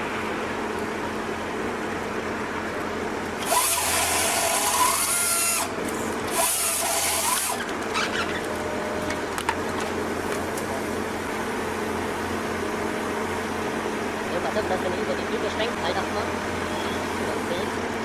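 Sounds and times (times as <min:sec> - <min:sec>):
steady machine drone: 0:00.0 - 0:18.0
power saw cutting: 0:03.4 - 0:08.5.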